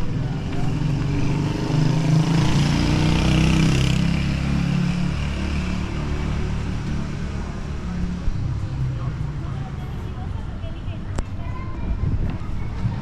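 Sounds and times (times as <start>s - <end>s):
vehicle passing by: 0.0s - 9.7s.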